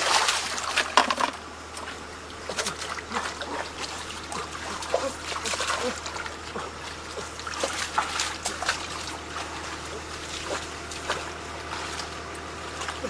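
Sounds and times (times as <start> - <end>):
water trickling and splashing: 0.0 - 13.0.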